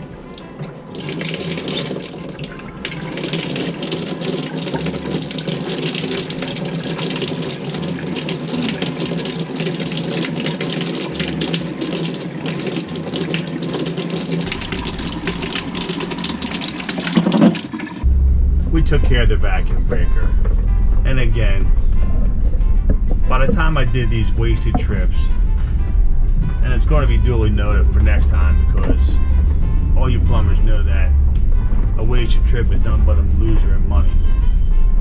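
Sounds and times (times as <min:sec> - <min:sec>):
water running from faucet: 0:00.0 - 0:18.1.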